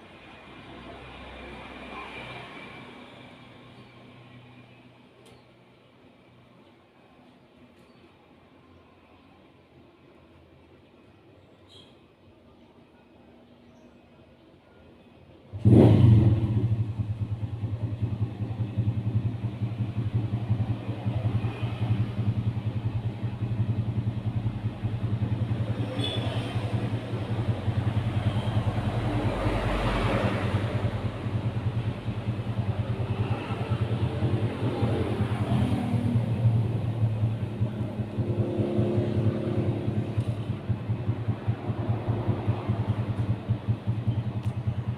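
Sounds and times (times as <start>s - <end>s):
engine running: 15.6s - 44.9s.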